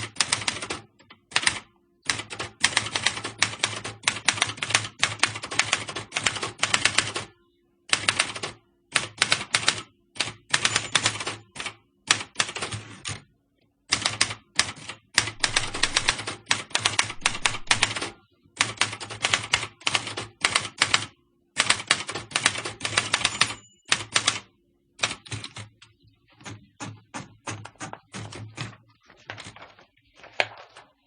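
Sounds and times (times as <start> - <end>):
typewriter keys clacking: 9.2 - 13.2, 14.0 - 21.0, 21.6 - 24.4, 26.4 - 31.0.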